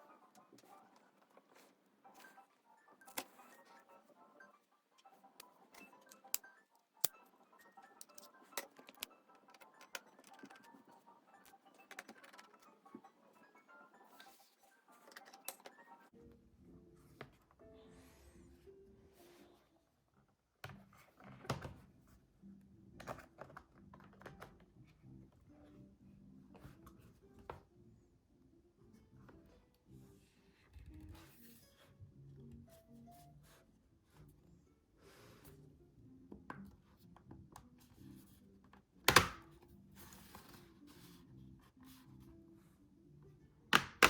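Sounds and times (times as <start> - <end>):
faint background music: 0.0 - 44.0
laptop parts clicking and tapping: 5.0 - 12.8, 15.0 - 15.9, 39.0 - 39.6, 43.7 - 44.0.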